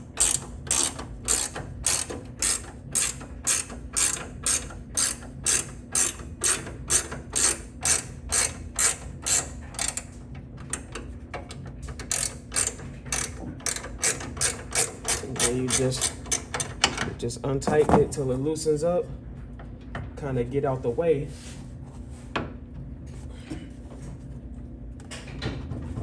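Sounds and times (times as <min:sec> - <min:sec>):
ratchet clicking: 0:00.1 - 0:10.1, 0:12.0 - 0:16.8.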